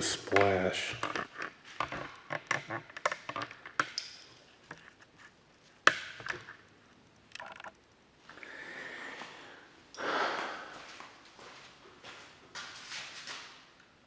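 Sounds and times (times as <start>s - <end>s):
handling clicks and knocks: 0.3s - 6.6s.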